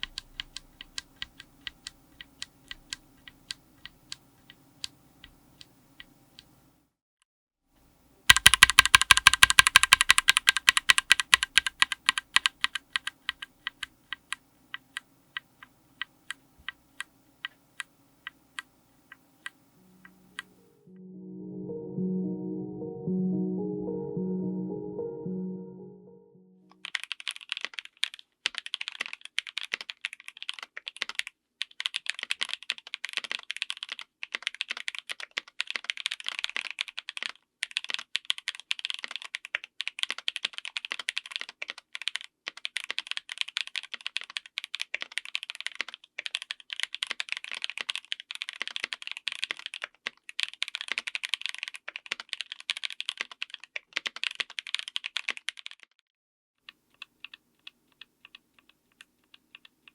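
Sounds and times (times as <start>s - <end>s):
mechanical keyboard typing: 0.0s - 6.6s, 8.3s - 20.6s, 26.7s - 55.9s, 56.7s - 59.9s.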